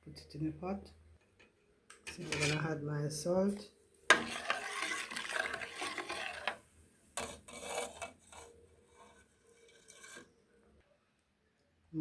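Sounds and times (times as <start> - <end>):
spoon scraping cooking pot: 2.0 - 2.8, 4.1 - 10.4.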